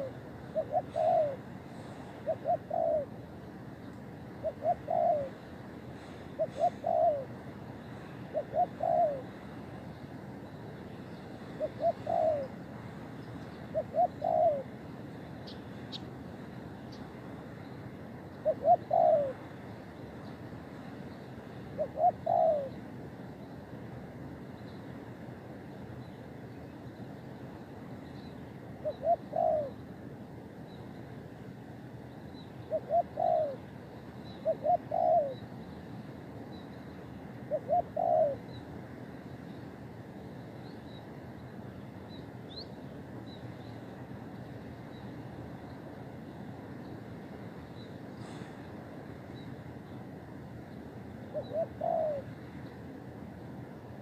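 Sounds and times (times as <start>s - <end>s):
dove cooing: 0.0s - 3.2s, 4.3s - 9.9s, 11.4s - 12.8s, 13.5s - 14.8s, 18.4s - 19.7s, 21.7s - 22.8s, 28.8s - 29.8s, 32.6s - 33.7s, 34.3s - 35.4s, 37.5s - 38.6s, 51.3s - 52.4s
steady background hiss: 0.0s - 54.0s.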